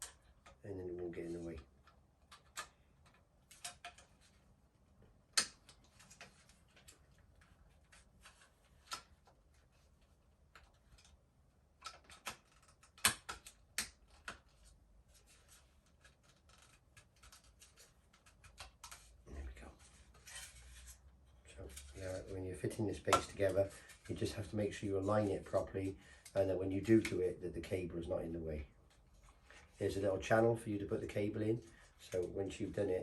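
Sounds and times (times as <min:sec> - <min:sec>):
sharp plastic snaps: 0:01.7 - 0:04.1, 0:05.3 - 0:06.3, 0:11.8 - 0:14.5
plastic parts clicking together: 0:01.7 - 0:04.2, 0:11.8 - 0:14.6.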